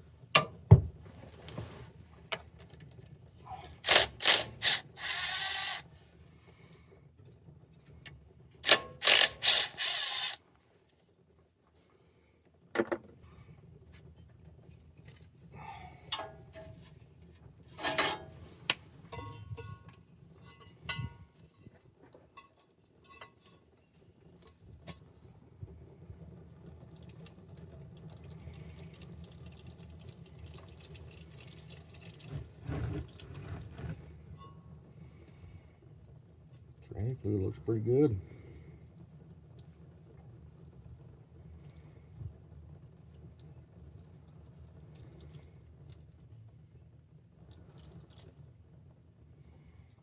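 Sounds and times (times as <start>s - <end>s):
fluid dripping and trickling: 26.0s - 34.1s, 39.5s - 46.5s, 47.4s - 48.6s.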